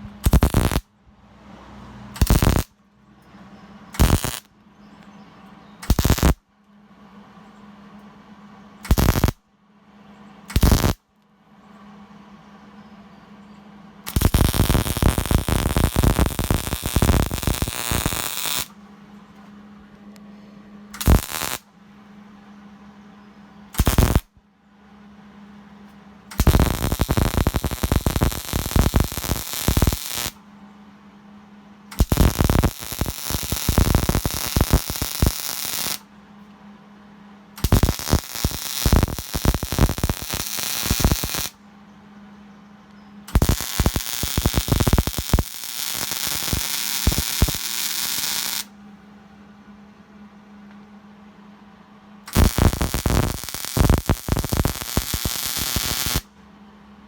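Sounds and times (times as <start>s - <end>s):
steady low hum: 0.0s - 57.0s
welding arc crackling: 0.2s - 0.8s, 2.2s - 2.7s, 4.0s - 4.5s, 5.9s - 6.4s, 8.9s - 9.4s, 10.5s - 11.0s, 14.1s - 18.7s, 21.0s - 21.6s, 23.8s - 24.3s, 26.4s - 30.4s, 32.0s - 36.0s, 37.6s - 41.6s, 43.3s - 48.7s, 52.3s - 56.3s.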